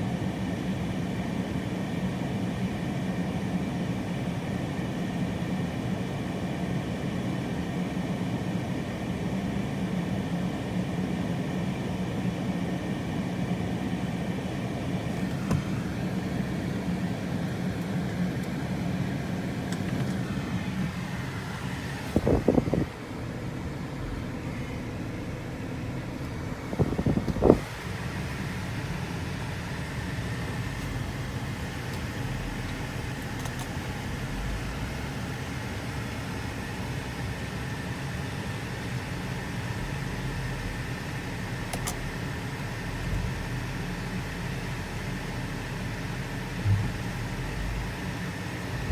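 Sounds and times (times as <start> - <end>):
strong wind blowing: 22.1 - 23.0
wind buffeting microphone: 22.1 - 23.0, 26.7 - 27.7
low hum: 46.6 - 48.0.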